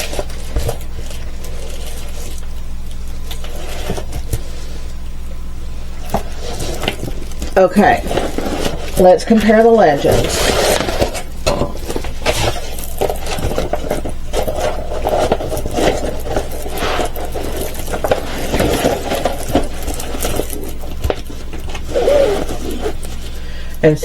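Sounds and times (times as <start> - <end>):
canvas rustling and crinkling: 0.0 - 23.8.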